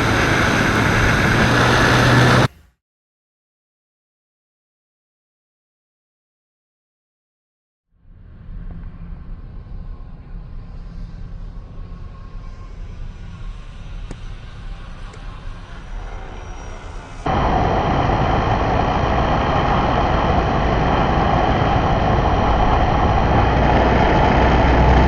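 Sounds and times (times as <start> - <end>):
wind noise: 0.0 - 2.5, 8.1 - 25.0
model airplane motor drone: 0.0 - 2.6, 8.7 - 25.0.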